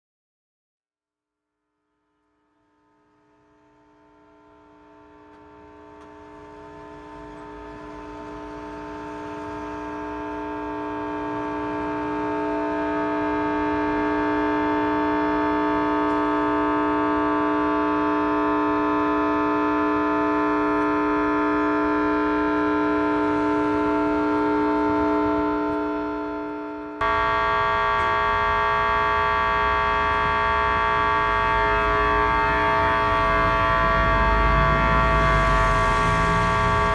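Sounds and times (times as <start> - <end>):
steady tone rich in overtones: 20.5 - 36.9.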